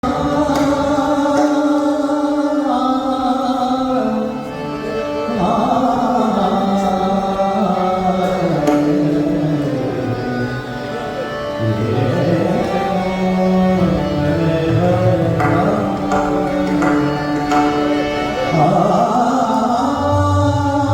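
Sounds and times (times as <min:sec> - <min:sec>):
devotional music with held notes: 0:00.0 - 0:20.9.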